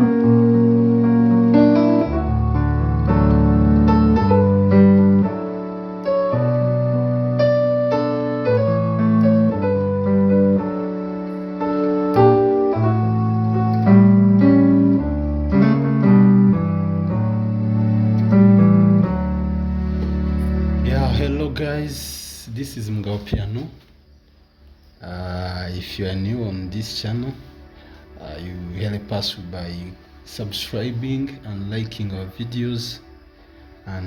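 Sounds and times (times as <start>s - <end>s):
keyboard playing slow chords: 0.0s - 34.0s.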